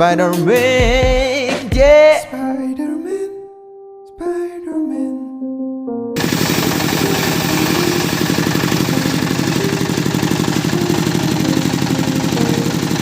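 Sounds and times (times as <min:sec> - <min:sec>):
saw engine running: 0:06.2 - 0:13.0.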